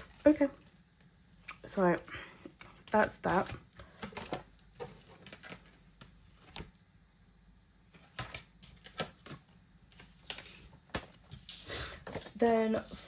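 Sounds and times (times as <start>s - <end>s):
paper and card rustling: 0.0s - 6.8s, 7.8s - 13.0s.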